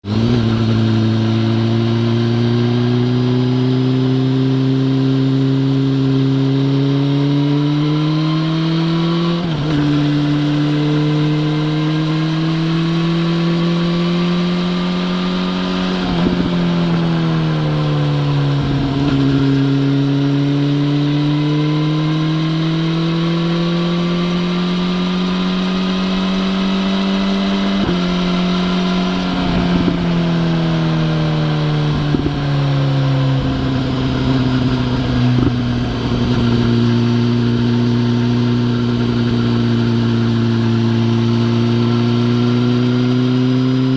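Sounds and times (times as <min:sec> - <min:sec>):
motorcycle engine accelerating: 0:00.0 - 0:43.9.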